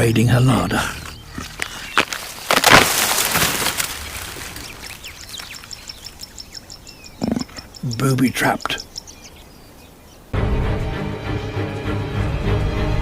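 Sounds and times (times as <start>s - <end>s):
small bird chirping: 3.9s - 10.3s.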